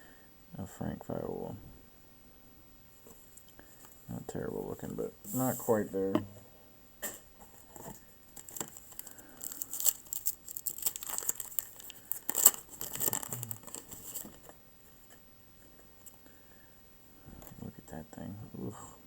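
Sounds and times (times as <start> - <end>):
paper wrapper tearing and crinkling: 7.8 - 14.5.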